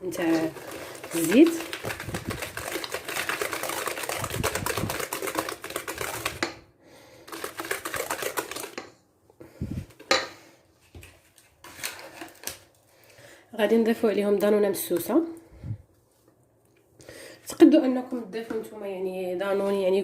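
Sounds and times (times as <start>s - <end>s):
whisk clicking against bowl: 0.2s - 6.7s, 7.3s - 8.9s.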